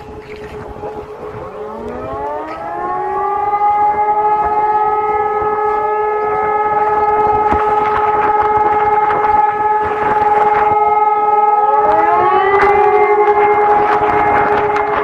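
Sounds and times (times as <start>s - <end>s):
siren winding up: 0.0s - 15.0s
steady siren tone: 0.0s - 15.0s.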